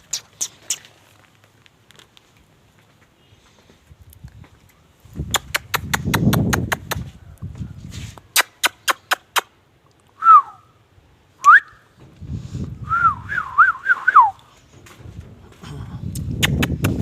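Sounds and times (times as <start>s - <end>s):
quick sharp clicks: 5.3s - 7.1s, 8.3s - 9.5s
person whistling: 10.2s - 10.7s, 11.4s - 11.8s, 12.8s - 14.4s.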